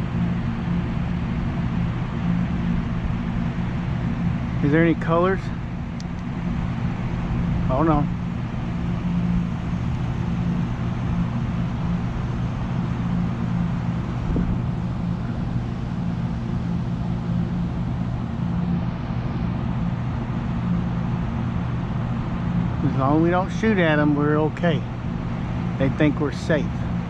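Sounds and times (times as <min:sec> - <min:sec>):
constant low hum: 0:00.0 - 0:27.0
wind buffeting microphone: 0:05.2 - 0:19.2.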